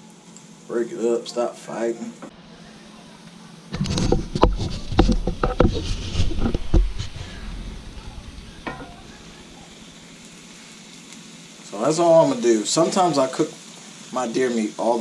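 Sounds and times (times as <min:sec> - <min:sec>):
meat sizzling in a skillet: 0:03.5 - 0:15.0
utensil knocking and scraping pan: 0:03.8 - 0:09.6.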